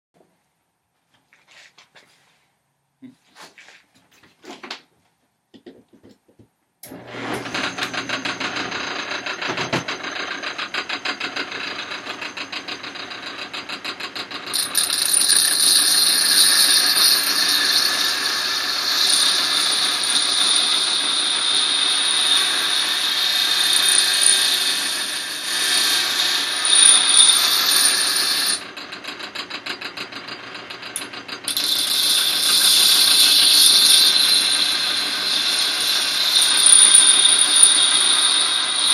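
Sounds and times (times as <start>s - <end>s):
sharpening grinder humming: 6.8s - 29.4s, 30.4s - 38.9s
steel blade grinding hiss: 14.6s - 28.6s, 31.5s - 38.9s.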